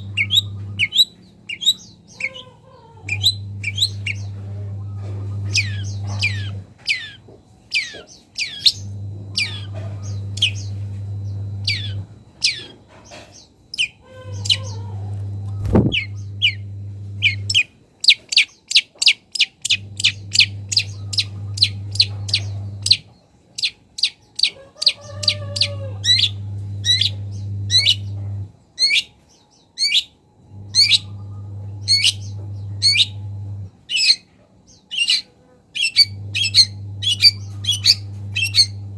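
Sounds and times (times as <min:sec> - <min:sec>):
low hum: 0:00.0 - 0:01.0, 0:03.0 - 0:06.7, 0:08.7 - 0:12.6, 0:14.3 - 0:17.6, 0:19.7 - 0:23.0, 0:25.4 - 0:28.5, 0:30.5 - 0:33.7, 0:36.1 - 0:38.9
shrike singing: 0:00.0 - 0:12.8, 0:13.7 - 0:18.2, 0:19.4 - 0:29.2, 0:29.8 - 0:34.2, 0:35.0 - 0:38.9.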